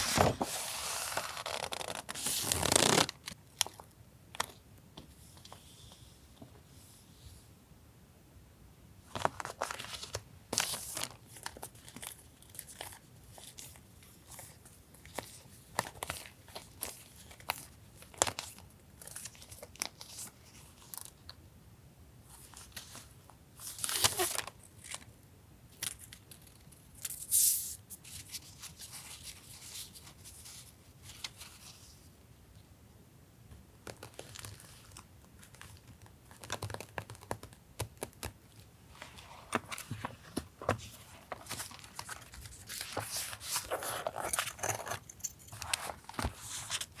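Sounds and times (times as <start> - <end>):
paper rustling and crinkling: 0.0 - 3.8, 38.9 - 47.0
paper tearing: 0.9 - 3.1.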